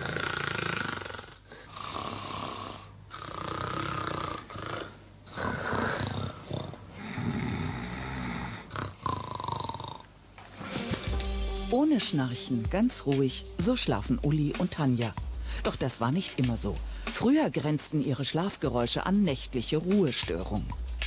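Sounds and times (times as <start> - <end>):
person snoring: 0.0 - 10.1.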